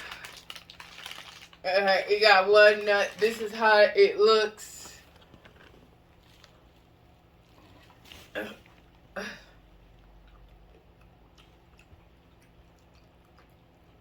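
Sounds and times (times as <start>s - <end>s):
chewing crunchy nut: 9.8s - 14.0s.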